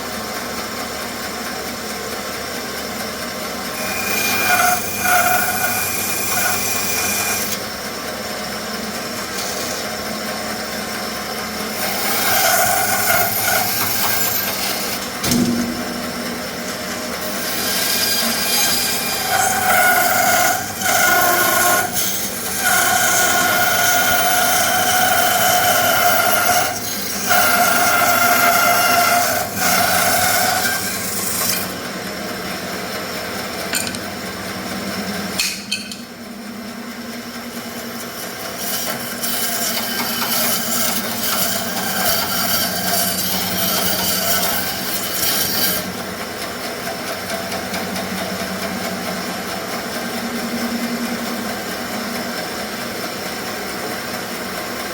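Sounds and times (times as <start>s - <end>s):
bandsaw cutting wood: 3.7s - 7.7s, 9.0s - 15.4s, 17.2s - 31.8s, 38.0s - 46.1s.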